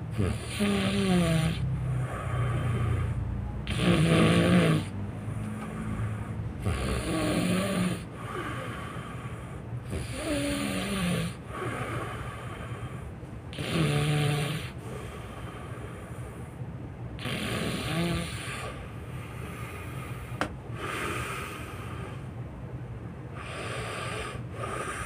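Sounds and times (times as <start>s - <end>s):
hissing breaths: 0.0s - 13.9s, 14.5s - 22.4s, 23.3s - 25.0s
person snoring loudly: 0.1s - 5.0s, 5.7s - 9.2s, 9.8s - 12.9s, 13.5s - 14.8s, 17.2s - 18.8s.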